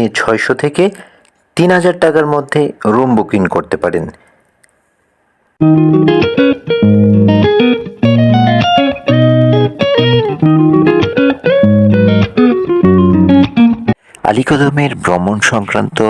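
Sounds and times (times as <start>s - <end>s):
plucked guitar melody: 5.6s - 14.0s
bass: 6.8s - 16.0s.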